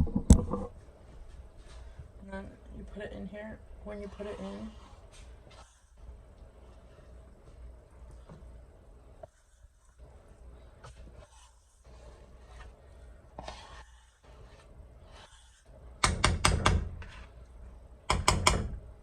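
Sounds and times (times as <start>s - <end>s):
stirring and handling noise: 0.0s - 18.2s.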